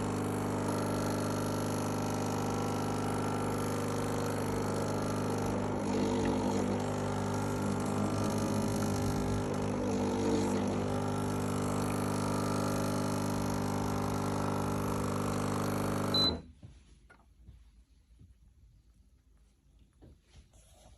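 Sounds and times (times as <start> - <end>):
espresso machine pump buzzing: 0.0 - 16.4.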